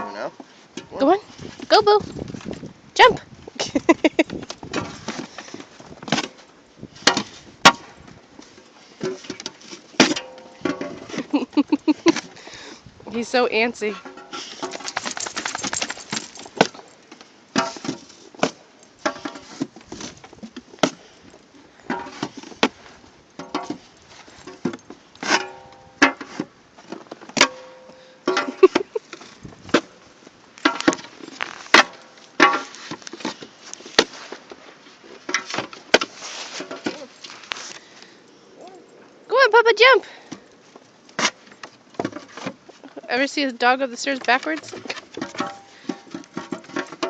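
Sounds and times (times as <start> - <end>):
dog paws on wooden stairs: 14.6 - 16.6.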